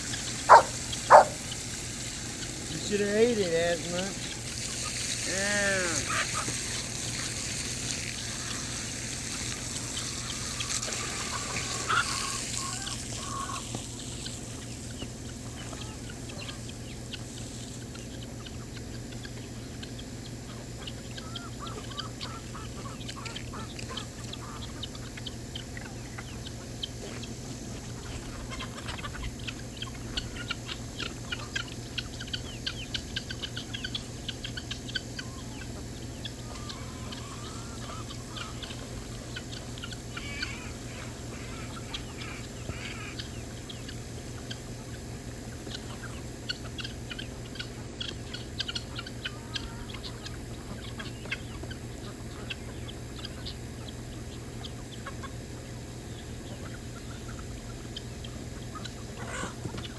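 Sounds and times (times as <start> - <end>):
ducks and fowl calling: 0.0 - 59.9
steady low hum: 0.0 - 59.9
quick high peeps: 0.4 - 1.5.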